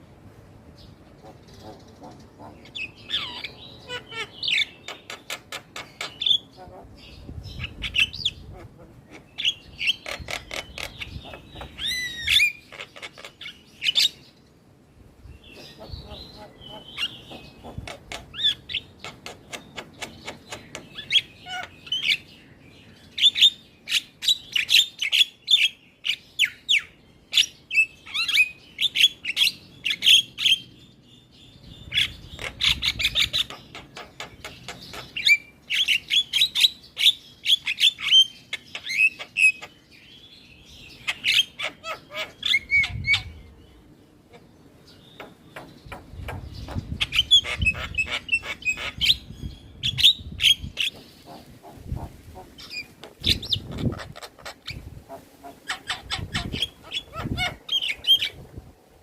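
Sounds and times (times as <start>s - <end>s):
myna bird chattering and whistling: 1.0s - 14.3s, 15.3s - 22.4s, 31.8s - 43.6s, 44.2s - 58.4s.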